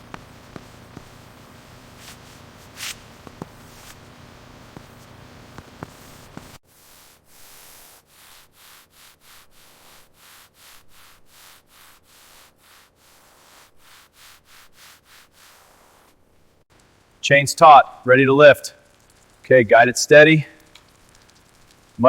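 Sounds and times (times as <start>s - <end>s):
back-and-forth rubbing strokes: 0.0s - 16.4s.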